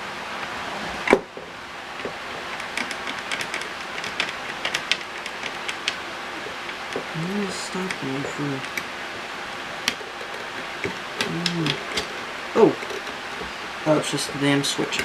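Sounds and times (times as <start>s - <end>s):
steady background hiss: 0.0s - 15.0s
small clicks and taps: 2.0s - 6.0s.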